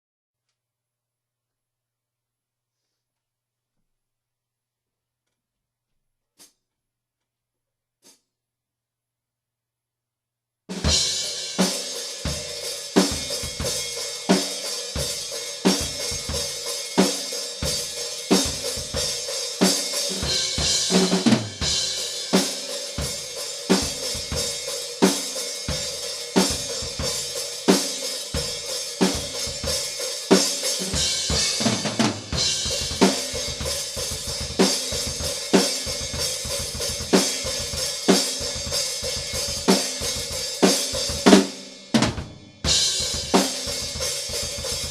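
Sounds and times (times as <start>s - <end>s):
metal drum kit groove: 10.7s - 44.9s.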